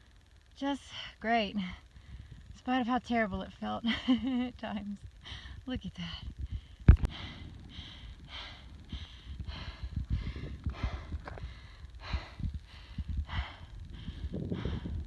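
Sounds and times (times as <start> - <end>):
heavy fast breathing: 5.1 - 15.0
low thuds: 6.2 - 15.0.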